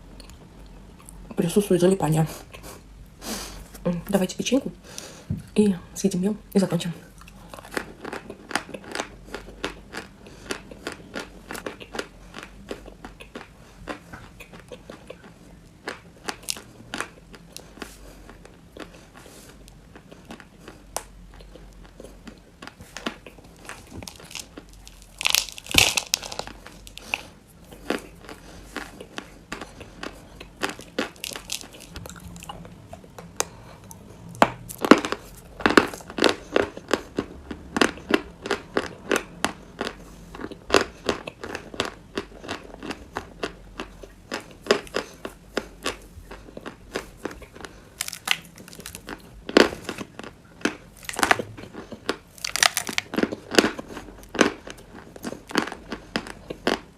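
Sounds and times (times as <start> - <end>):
chalk being bitten and chewed: 7.2 - 32.7, 37.9 - 56.8.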